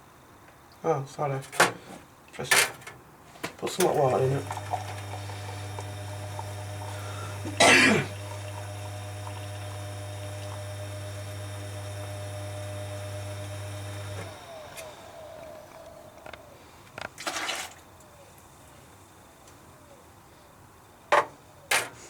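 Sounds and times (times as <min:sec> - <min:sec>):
coffee machine pump buzzing: 0:03.8 - 0:16.7.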